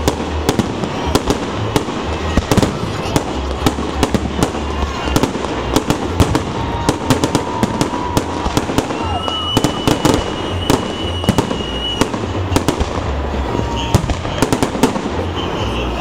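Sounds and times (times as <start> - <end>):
firework bangs: 0.0 - 16.0
long thin whistle: 8.8 - 12.8.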